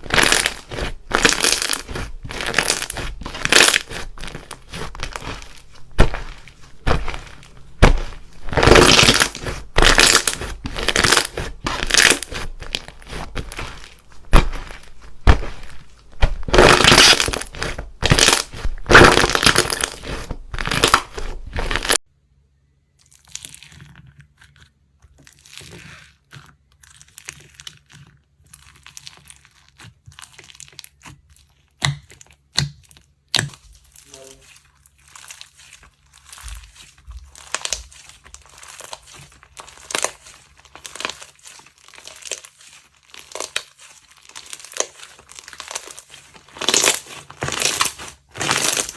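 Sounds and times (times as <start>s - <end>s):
slime crackling and popping: 0.0s - 22.0s, 34.9s - 48.9s
soft slime crackles: 0.0s - 22.0s, 33.7s - 48.9s.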